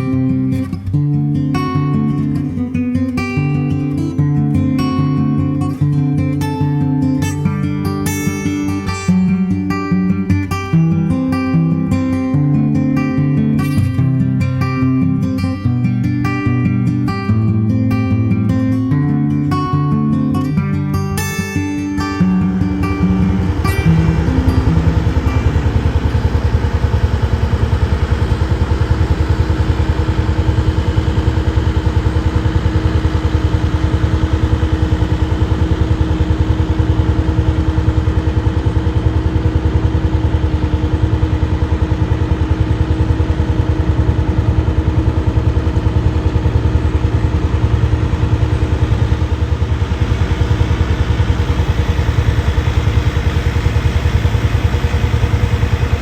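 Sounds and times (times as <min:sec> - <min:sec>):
tractor diesel engine running: 0:22.0 - 0:56.0.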